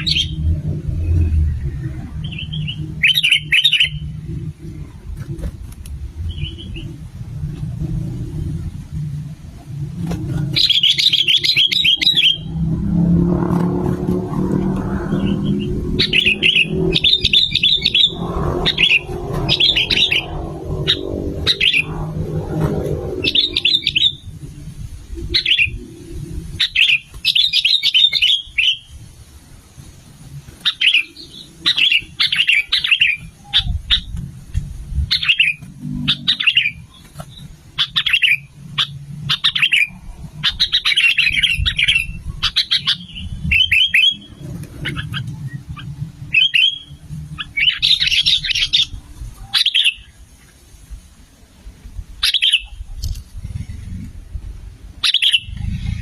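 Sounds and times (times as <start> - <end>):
low rumble: 0.0 - 26.8
bulbuls chattering calls: 2.2 - 4.9, 10.2 - 12.5, 15.1 - 24.3, 25.2 - 26.0, 26.6 - 28.8, 30.6 - 34.2, 35.1 - 50.2, 55.0 - 56.0.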